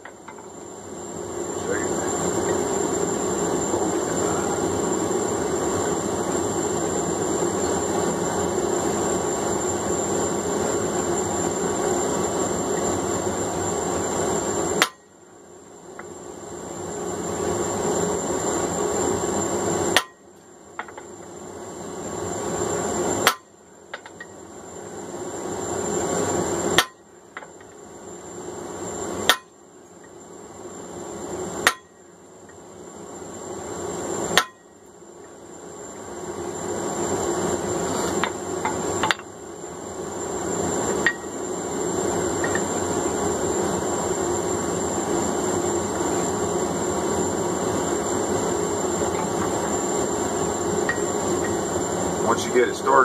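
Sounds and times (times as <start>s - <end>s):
hammer blows on hot steel: 14.7s - 15.1s, 19.9s - 20.9s, 26.7s - 27.5s, 29.2s - 29.6s, 31.6s - 32.1s, 34.3s - 34.8s.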